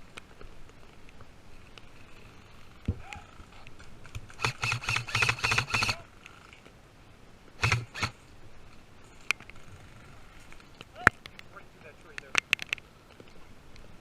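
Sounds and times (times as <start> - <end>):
airsoft gun firing: 4.4 - 6.0, 7.6 - 8.2.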